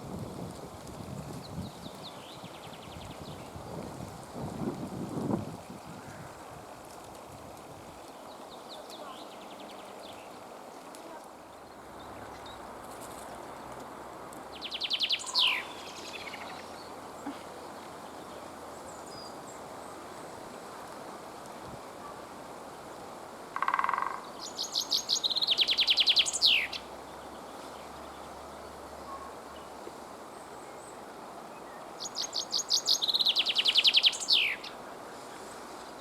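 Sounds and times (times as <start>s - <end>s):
outdoor background noise: 0.0s - 36.0s
songbird singing: 8.1s - 10.4s, 11.1s - 20.0s, 23.6s - 36.0s.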